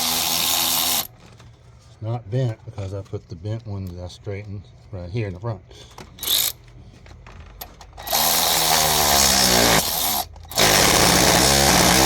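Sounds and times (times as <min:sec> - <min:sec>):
power tool spinning a bolt: 0:00.0 - 0:01.1, 0:06.2 - 0:06.6, 0:08.0 - 0:12.0.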